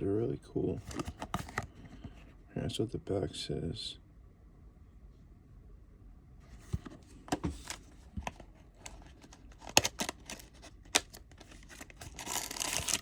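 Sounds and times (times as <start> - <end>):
packaging rustling: 0.8 - 1.8, 7.3 - 13.0.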